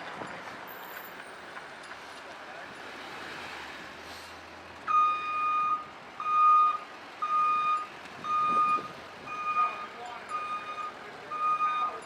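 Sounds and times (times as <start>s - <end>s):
back-up alarm beeping: 4.9s - 12.0s.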